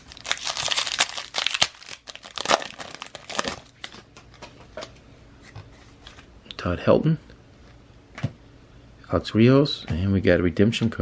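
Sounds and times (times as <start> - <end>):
card pack wrapper crinkling: 0.0 - 4.5.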